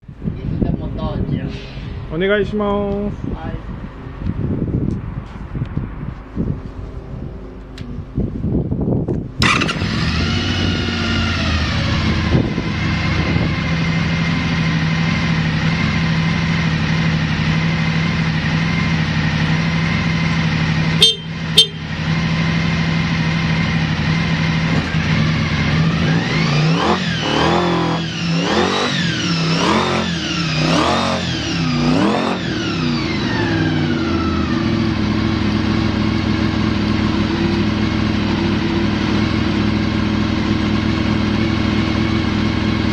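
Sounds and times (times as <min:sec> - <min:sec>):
motorcycle throttle blips: 0:07.5 - 0:11.9, 0:20.3 - 0:22.3
motorcycle engine idling: 0:09.3 - 0:26.0, 0:33.8 - 0:42.9
motorcycle electric starter: 0:09.4 - 0:11.6.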